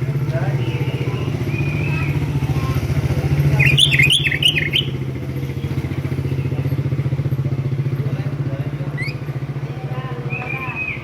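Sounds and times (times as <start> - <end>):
engine idling: 0.0 - 11.0
bird singing warbled notes: 0.5 - 2.6, 3.4 - 6.7.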